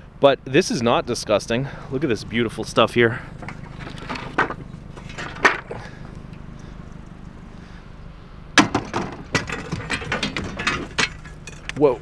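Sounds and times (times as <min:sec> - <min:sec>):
junk clattering and rattling: 0:03.0 - 0:07.5, 0:08.6 - 0:12.0.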